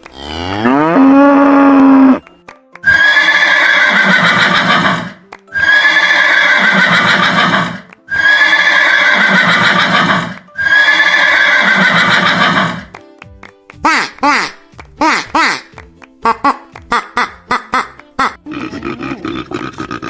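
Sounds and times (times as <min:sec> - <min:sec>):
horse neighing: 0:00.6 - 0:02.2, 0:02.8 - 0:12.9.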